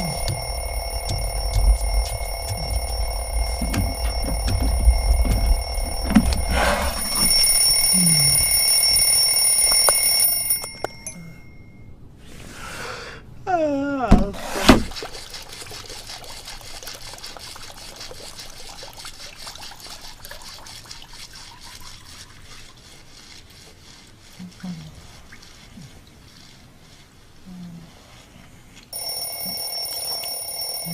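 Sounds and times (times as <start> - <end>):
wobbling falling tone: 0.0 - 9.0
cartoon alarm clock ringing: 0.0 - 11.9, 29.0 - 30.9.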